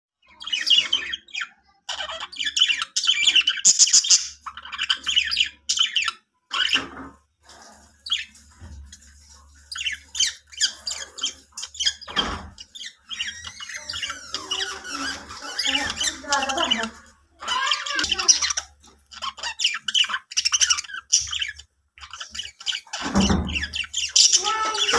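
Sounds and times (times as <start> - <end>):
budgies chirping and squawking: 0.2 - 24.9.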